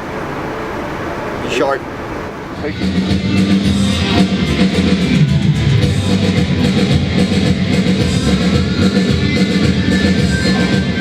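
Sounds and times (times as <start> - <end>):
drum kit: 2.6 - 11.0
loud rock guitar: 2.6 - 11.0.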